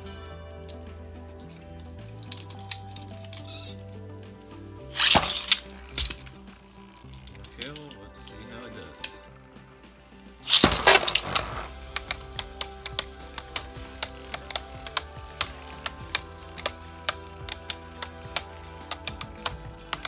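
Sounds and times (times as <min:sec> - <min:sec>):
spinning tops clashing clicks: 0:04.9 - 0:09.2, 0:10.4 - 0:20.0.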